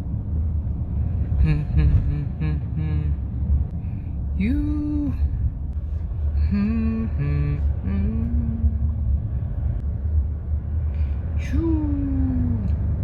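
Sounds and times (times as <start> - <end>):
car cabin rumble: 0.0 - 13.0
man humming a tune: 1.3 - 3.3, 6.4 - 9.0, 11.4 - 12.8.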